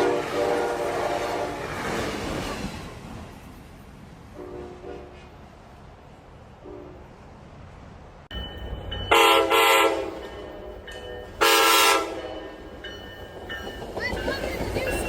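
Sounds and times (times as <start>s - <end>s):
train air horn blasts: 0.0s - 2.0s, 4.3s - 5.3s, 6.6s - 7.0s, 9.1s - 10.2s, 11.4s - 12.6s.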